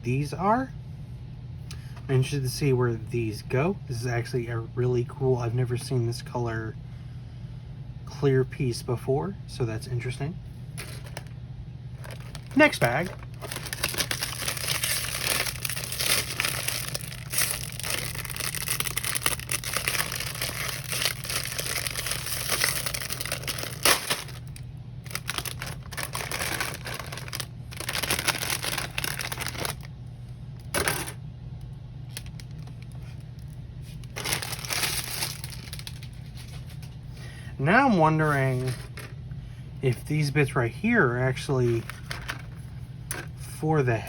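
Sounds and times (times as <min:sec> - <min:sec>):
plastic bag crinkling: 0:10.8 - 0:11.3, 0:11.9 - 0:29.9, 0:32.1 - 0:36.9, 0:41.7 - 0:43.3.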